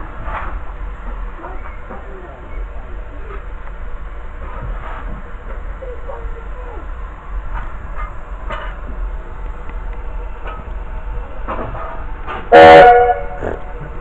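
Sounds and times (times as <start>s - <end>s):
train rumbling: 0.0s - 14.0s
locomotive whistle blast: 12.5s - 13.6s.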